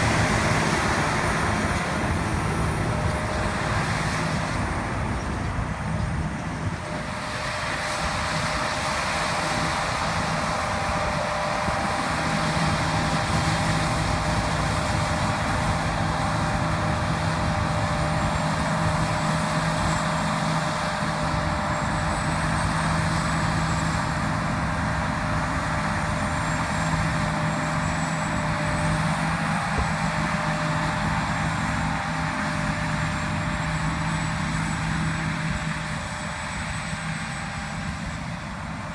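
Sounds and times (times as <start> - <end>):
harvester engine drone: 0.0 - 38.9.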